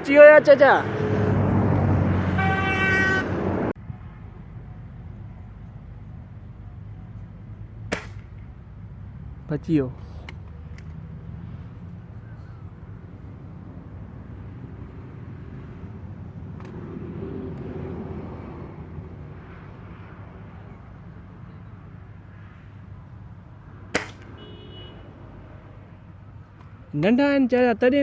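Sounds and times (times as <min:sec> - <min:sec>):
air rifle firing: 0:07.9 - 0:08.4.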